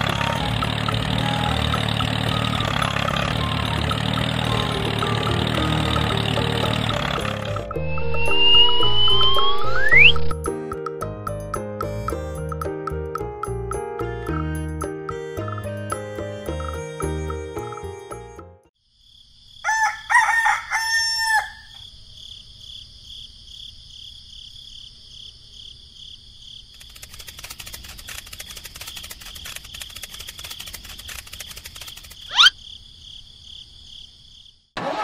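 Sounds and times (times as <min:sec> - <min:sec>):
high pulsing chirr: 0:07.7 - 0:10.4
sharp rising sweep: 0:07.7 - 0:10.4
rooster crowing: 0:19.6 - 0:21.8.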